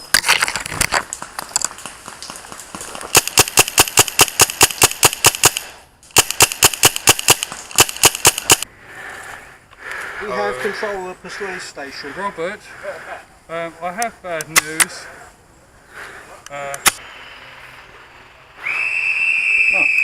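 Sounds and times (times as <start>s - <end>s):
airsoft gun rapid firing: 3.1s - 8.6s.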